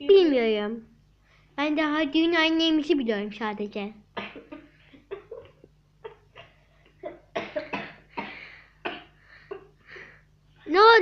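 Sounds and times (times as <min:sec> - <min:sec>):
person coughing: 0:04.2 - 0:09.8.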